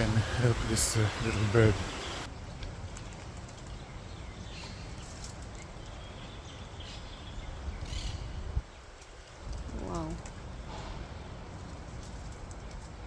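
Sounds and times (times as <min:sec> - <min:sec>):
faint bird chirps: 0:00.0 - 0:02.3.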